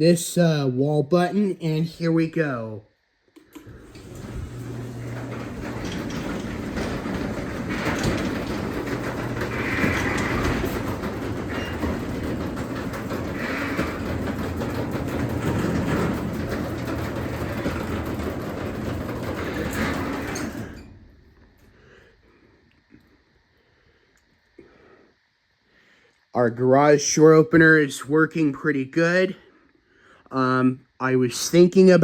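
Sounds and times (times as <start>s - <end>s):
garage door opener motor hum: 3.4s - 21.6s
garage door rumbling on tracks: 3.6s - 21.7s.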